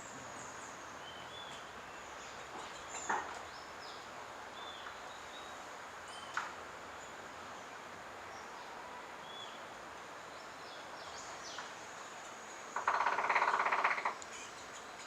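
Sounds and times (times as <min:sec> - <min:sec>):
insect whine: 0:12.5 - 0:14.6
woodpecker drumming: 0:12.7 - 0:14.3.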